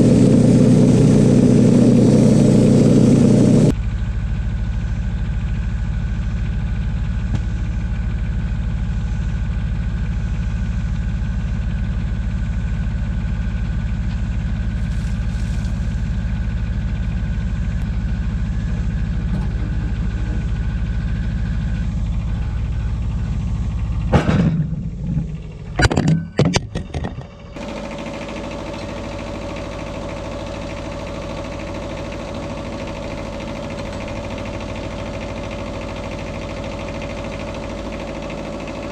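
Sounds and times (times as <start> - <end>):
machine humming: 0.0 - 3.8
sawmill engine rumbling: 0.0 - 25.8, 27.2 - 38.9.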